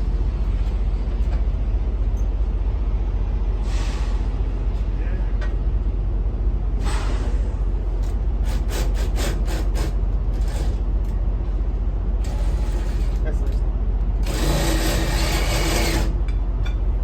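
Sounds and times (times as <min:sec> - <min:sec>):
short air hisses: 0:03.6 - 0:04.3, 0:06.8 - 0:07.6.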